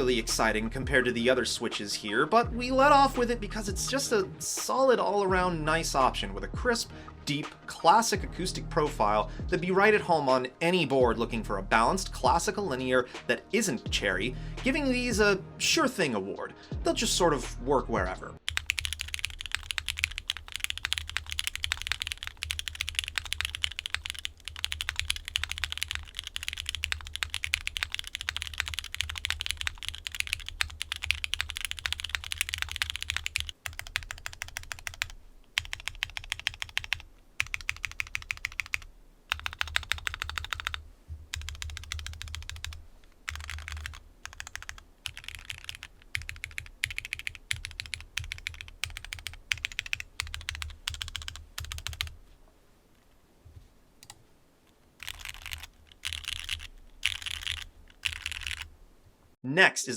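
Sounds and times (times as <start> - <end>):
mechanical keyboard typing: 18.5 - 52.1, 55.0 - 58.7.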